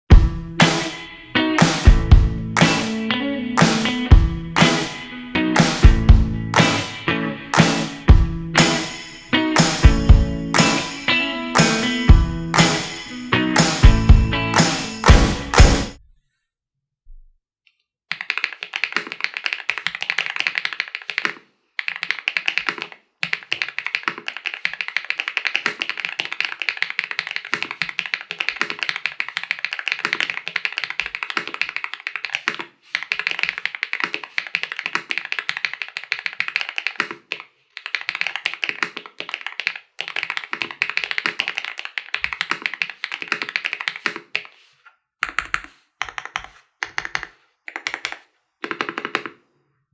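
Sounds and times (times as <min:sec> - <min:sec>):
mechanical keyboard typing: 0:18.1 - 0:44.6, 0:45.2 - 0:49.4.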